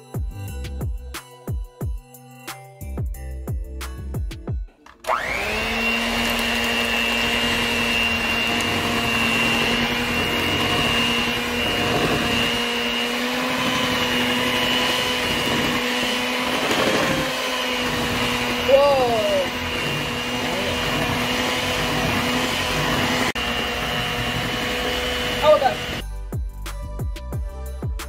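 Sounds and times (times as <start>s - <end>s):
background music: 0.0s - 23.4s, 24.2s - 28.0s
electric mixer whirring: 5.0s - 26.0s.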